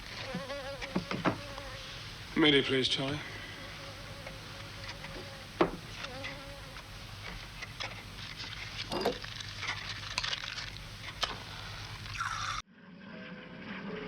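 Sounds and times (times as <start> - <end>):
steady low hum: 0.0 - 12.2
flies buzzing: 0.0 - 12.6
sharp knocks: 0.2 - 1.5, 5.0 - 6.0.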